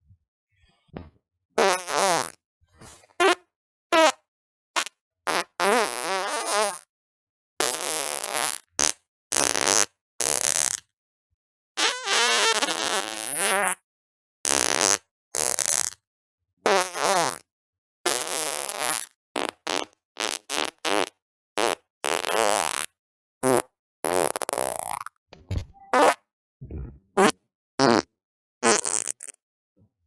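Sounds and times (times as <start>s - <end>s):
fart sounds: 1.0s - 2.4s, 3.1s - 3.4s, 4.8s - 6.8s, 7.6s - 10.8s, 14.5s - 16.0s, 16.7s - 17.5s, 18.1s - 29.4s.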